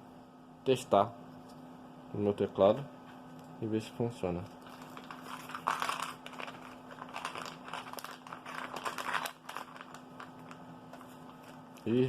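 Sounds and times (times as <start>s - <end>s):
plastic packaging crinkling: 4.6s - 12.0s.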